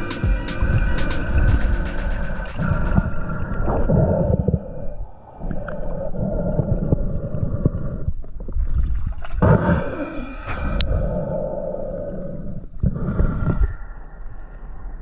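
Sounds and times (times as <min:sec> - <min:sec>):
breathing through a snorkel: 0:09.7 - 0:15.0.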